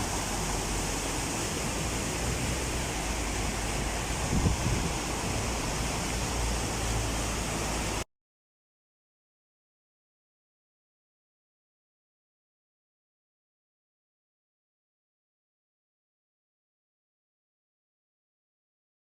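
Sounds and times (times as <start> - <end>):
rushing heavy water: 0.0 - 8.1.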